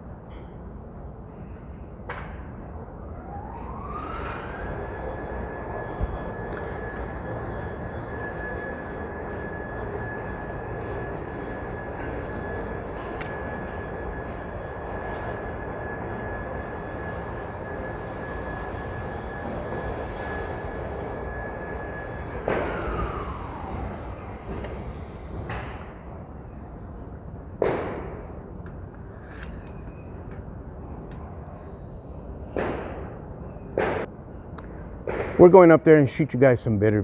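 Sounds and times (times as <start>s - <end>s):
motor whine: 1.4s - 27.2s
traffic noise: 1.9s - 31.6s.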